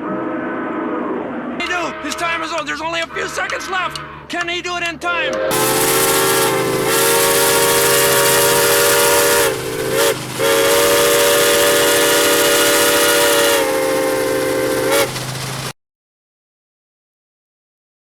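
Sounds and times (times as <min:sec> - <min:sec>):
steam locomotive chime whistle: 0:05.3 - 0:15.7
heavy steam hiss: 0:05.4 - 0:15.7.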